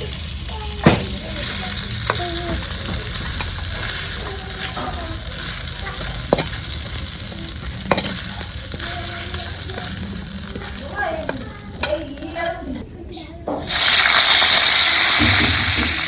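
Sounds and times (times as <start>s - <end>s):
potatoes sizzling in hot oil: 0.0s - 12.8s, 13.6s - 16.0s
spatula knocking against pan: 0.8s - 12.2s.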